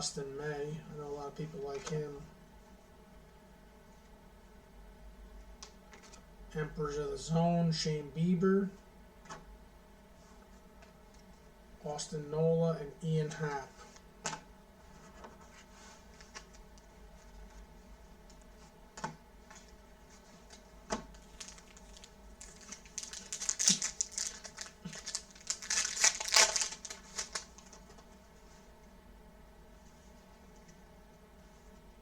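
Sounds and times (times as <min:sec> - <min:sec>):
foil wrapper crinkling and tearing: 0:21.2 - 0:27.8.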